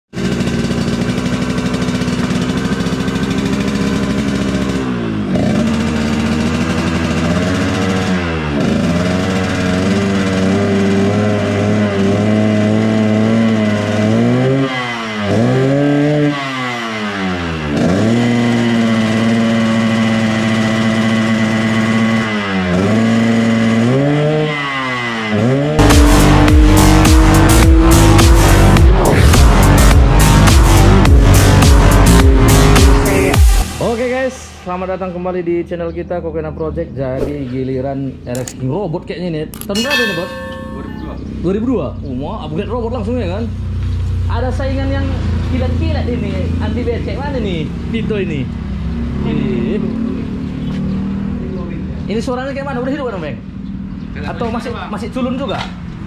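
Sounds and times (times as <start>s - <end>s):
two-stroke motorcycle engine revving: 0.2s - 33.6s.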